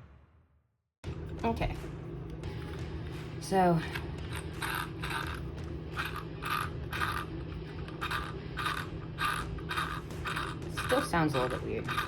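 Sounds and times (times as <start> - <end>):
metal gears grinding: 3.8 - 12.0.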